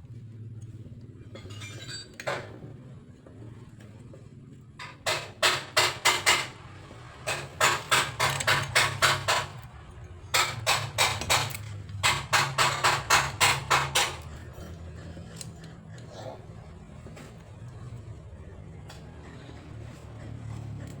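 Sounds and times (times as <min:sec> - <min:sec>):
steady low hum: 0:06.5 - 0:21.0.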